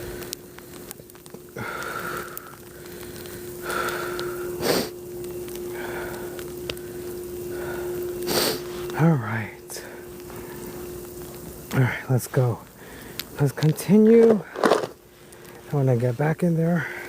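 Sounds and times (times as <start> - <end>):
steady low hum: 0.0 - 17.0
person breathing hard: 1.5 - 8.8, 12.8 - 13.4.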